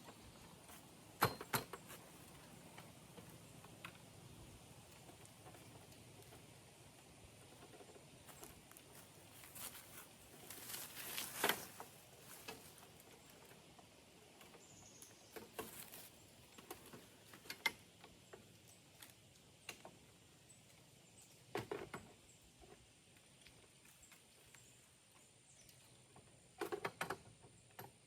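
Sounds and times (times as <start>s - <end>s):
leaves rustling: 1.8s - 17.6s.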